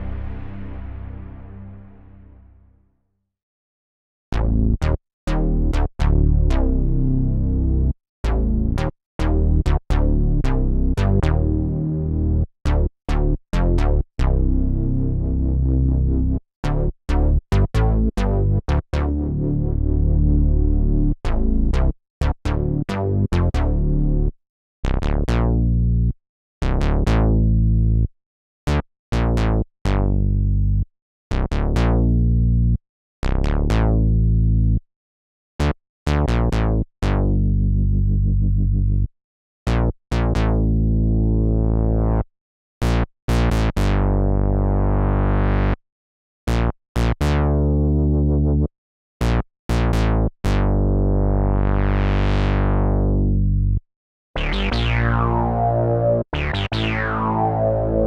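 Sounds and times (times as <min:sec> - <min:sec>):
synthesizer chords: 0:00.0 - 0:02.5, 0:54.4 - 0:58.0.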